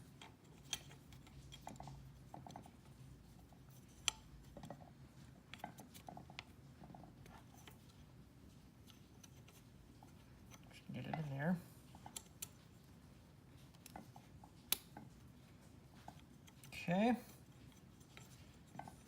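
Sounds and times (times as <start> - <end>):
low steady hum: 0.0 - 19.0
small metal parts clicking: 0.2 - 2.7.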